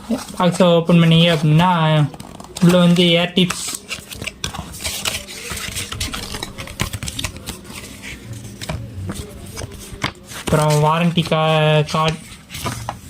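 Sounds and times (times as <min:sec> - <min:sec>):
packaging rustling: 0:01.0 - 0:13.0.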